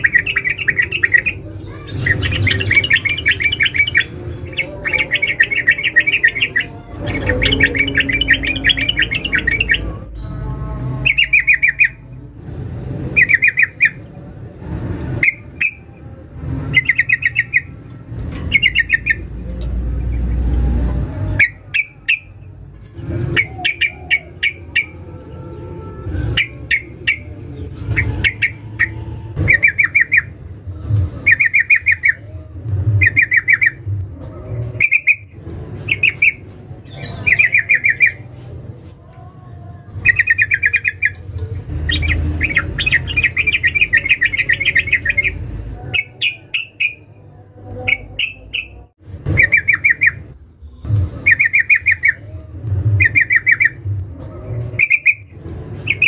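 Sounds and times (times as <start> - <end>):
bird chattering calls: 23.3 - 25.0.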